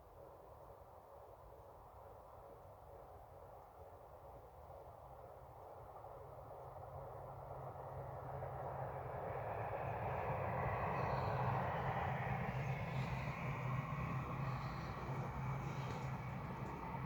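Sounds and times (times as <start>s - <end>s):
electric train running: 9.3s - 17.0s.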